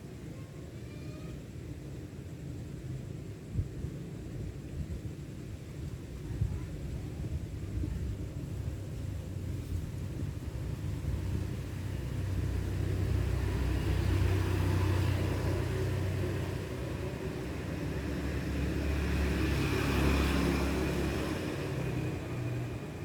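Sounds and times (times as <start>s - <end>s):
road traffic rumble: 6.6s - 23.0s.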